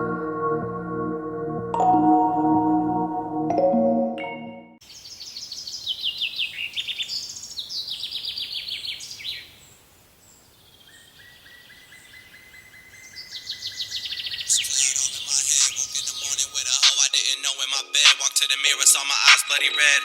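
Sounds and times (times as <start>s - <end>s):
songbirds trilling: 4.9s - 16.8s.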